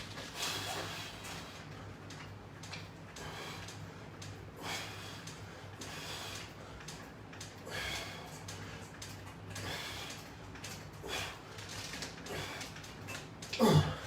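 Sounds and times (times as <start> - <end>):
steady low hum: 0.0 - 14.0
person breathing hard: 7.6 - 8.5.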